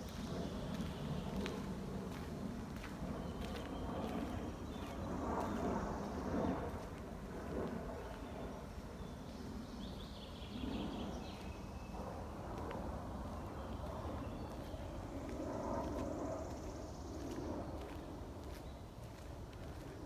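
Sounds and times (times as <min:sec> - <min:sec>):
footsteps crunching on path: 0:17.2 - 0:20.0.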